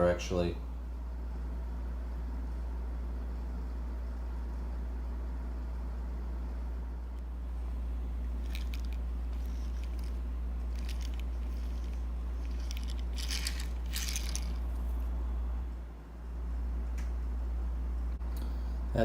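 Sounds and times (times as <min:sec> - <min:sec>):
steady low hum: 0:00.0 - 0:19.0
toy car clicks and rustling: 0:08.4 - 0:14.9.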